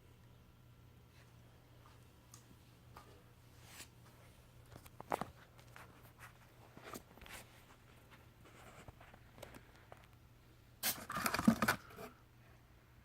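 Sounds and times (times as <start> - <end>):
rustling and scraping: 3.6 - 10.1.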